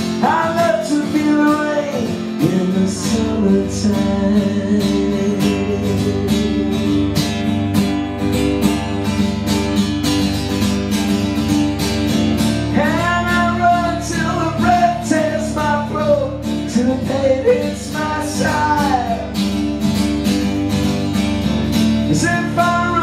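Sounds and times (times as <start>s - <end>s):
steady bass: 0.0s - 23.0s
strummed guitar: 0.0s - 23.0s
person singing: 0.1s - 7.2s, 12.7s - 19.4s, 22.0s - 23.0s.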